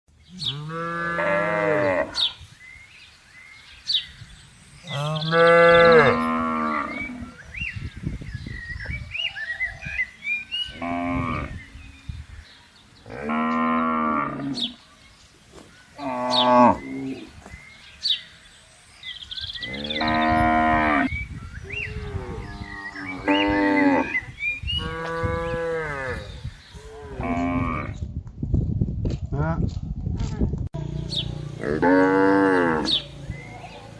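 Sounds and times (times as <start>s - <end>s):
cattle mooing: 4.9s - 7.2s, 31.6s - 33.0s.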